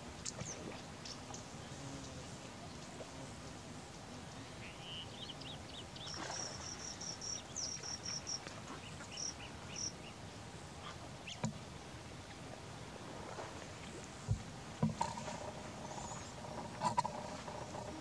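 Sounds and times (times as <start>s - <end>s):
birds chirping: 4.3s - 10.2s, 15.0s - 18.0s.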